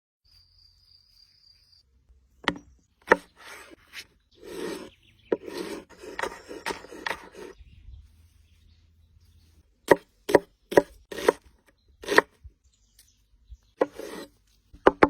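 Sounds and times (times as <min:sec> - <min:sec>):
wood knocking: 0:02.4 - 0:03.3, 0:14.8 - 0:15.0
wood scraping and rubbing: 0:02.4 - 0:07.6, 0:09.9 - 0:12.3, 0:13.8 - 0:15.0.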